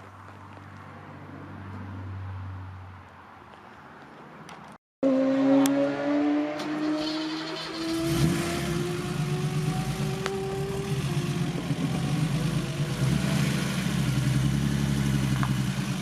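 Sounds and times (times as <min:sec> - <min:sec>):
car engine accelerating: 0:05.0 - 0:16.0.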